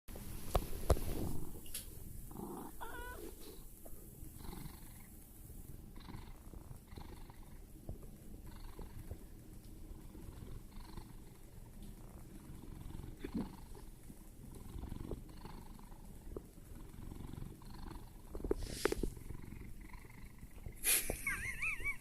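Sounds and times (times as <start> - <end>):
cat snoring: 2.3 - 3.7, 4.3 - 5.1, 5.9 - 7.6, 8.4 - 9.2, 9.9 - 20.9.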